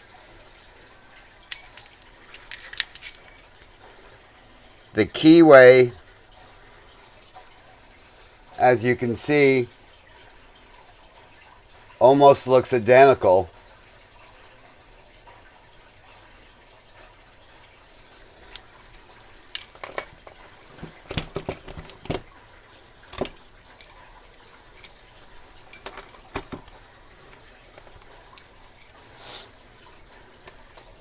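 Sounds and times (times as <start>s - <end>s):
keys and padlocks jingling: 1.4s - 4.1s, 18.5s - 22.3s, 23.0s - 24.1s, 24.8s - 29.2s, 30.5s - 31.0s.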